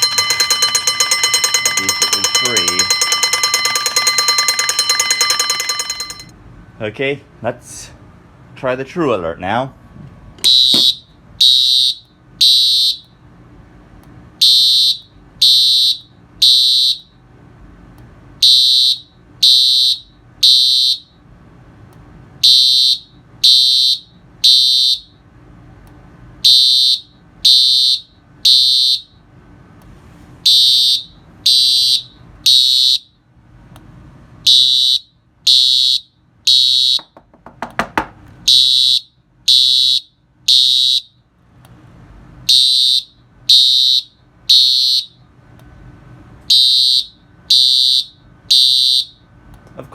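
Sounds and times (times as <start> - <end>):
fire alarm horn blasts: 10.4 - 13.2, 14.4 - 17.2, 18.4 - 21.2, 22.4 - 25.2, 26.4 - 29.2, 30.4 - 33.2, 34.4 - 37.2, 38.4 - 41.2, 42.4 - 45.2, 46.5 - 49.3.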